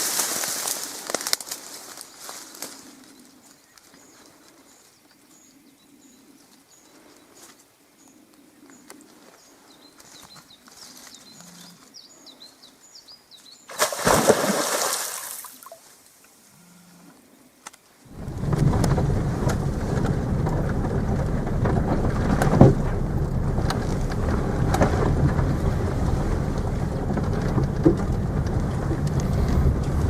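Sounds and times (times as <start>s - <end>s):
small birds calling: 2.7s - 13.8s.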